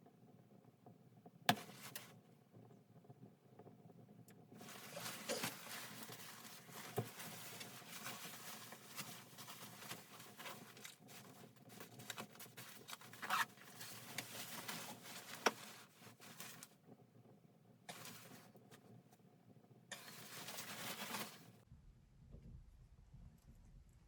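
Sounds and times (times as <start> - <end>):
close rustling and pattering: 1.5 - 2.2, 4.3 - 17.0, 17.9 - 19.1, 19.9 - 21.6.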